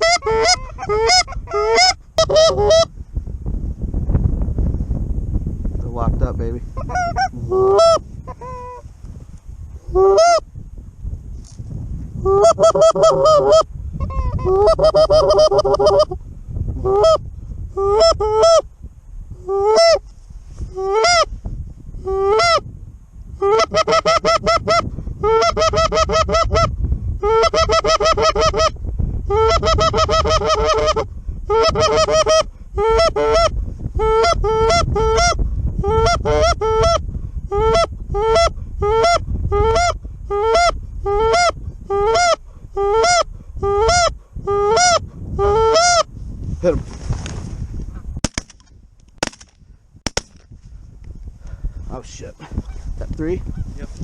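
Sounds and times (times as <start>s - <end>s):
geese honking: 0.0s - 2.9s.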